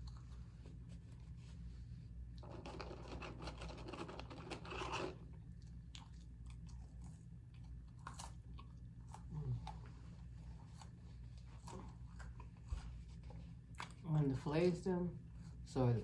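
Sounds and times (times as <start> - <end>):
person chewing food: 2.3 - 14.0.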